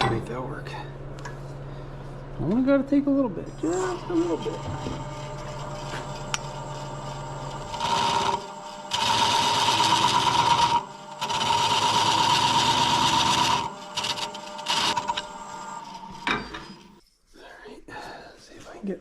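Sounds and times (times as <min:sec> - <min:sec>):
lathe cutting rasp: 0:03.5 - 0:16.8
lathe motor whine: 0:03.5 - 0:17.0.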